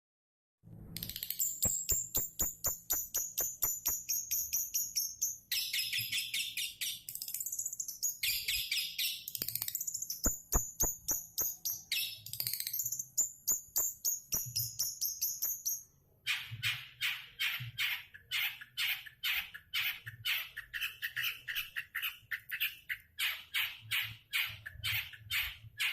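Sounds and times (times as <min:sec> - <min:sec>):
shrike singing chattering song: 0:01.0 - 0:15.8.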